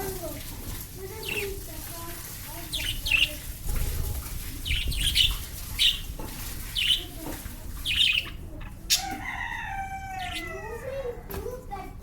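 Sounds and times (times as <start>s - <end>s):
lovebirds squawking: 2.6s - 11.0s.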